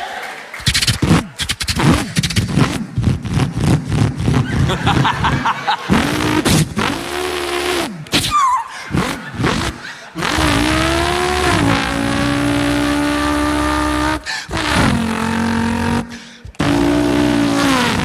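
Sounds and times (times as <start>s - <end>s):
man imitating racing car engine: 3.3s - 8.0s, 8.9s - 18.0s.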